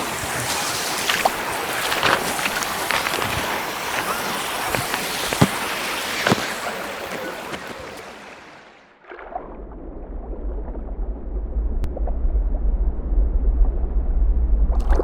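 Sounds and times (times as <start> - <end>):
stream splashing: 0.0 - 8.9
muffled underwater rumble: 9.2 - 15.0.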